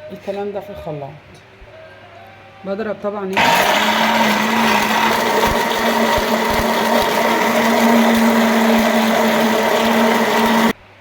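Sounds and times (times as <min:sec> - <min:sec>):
blender motor humming: 0:03.4 - 0:10.8.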